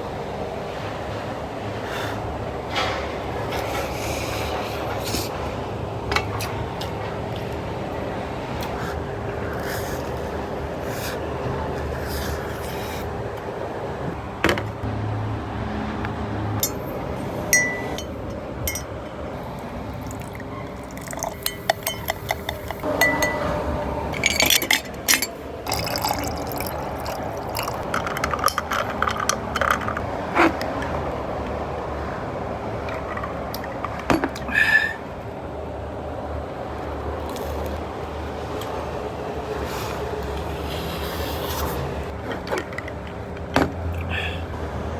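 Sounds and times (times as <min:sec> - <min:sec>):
steady background hum: 0:16.5 - 0:44.9
glass and tableware clinking: 0:16.6 - 0:19.0, 0:20.0 - 0:30.0
liquid being poured: 0:19.5 - 0:23.4, 0:24.2 - 0:30.0.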